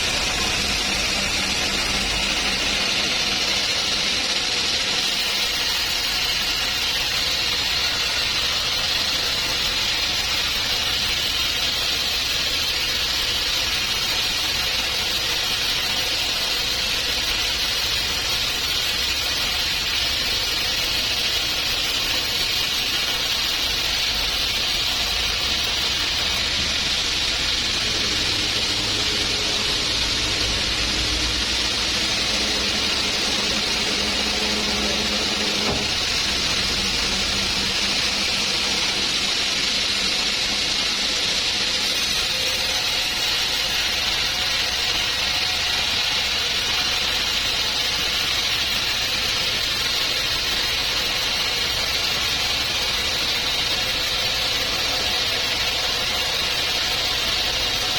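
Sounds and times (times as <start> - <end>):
sawmill machinery running: 0.0 - 57.9.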